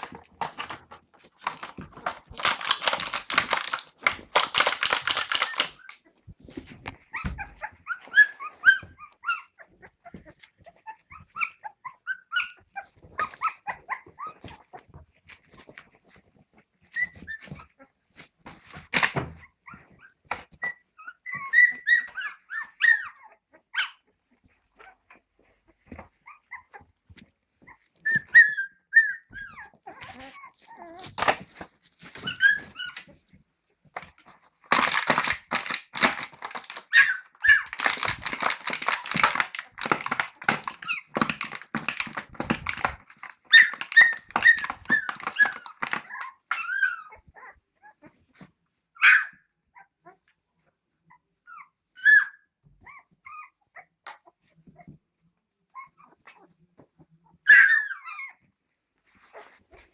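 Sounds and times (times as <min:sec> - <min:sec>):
dense clattering noise: 0:00.0 - 0:05.8, 0:34.7 - 0:36.9, 0:37.6 - 0:46.0
sharp clicks: 0:01.5 - 0:05.9
puppies squealing and whimpering: 0:06.9 - 0:14.9, 0:16.8 - 0:18.0, 0:19.4 - 0:26.9, 0:27.6 - 0:33.3, 0:34.2 - 0:48.3, 0:49.0 - 0:53.6, 0:57.3 - 0:58.5.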